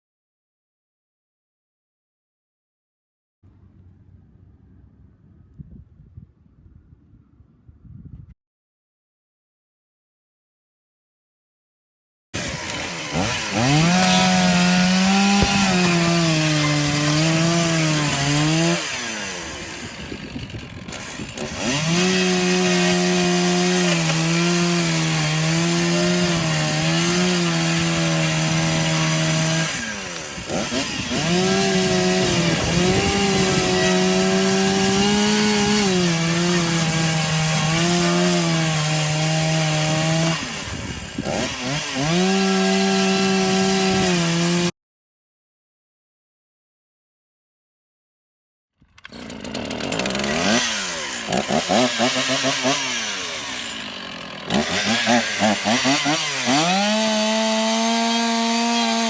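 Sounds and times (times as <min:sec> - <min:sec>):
chainsaw cutting wood: 0:12.4 - 0:44.8, 0:48.8 - 0:59.0.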